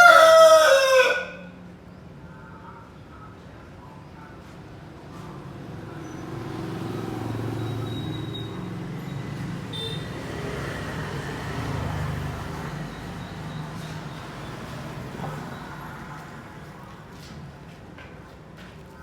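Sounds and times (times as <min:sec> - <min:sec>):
passing motor vehicle rumble: 0:04.7 - 0:19.0.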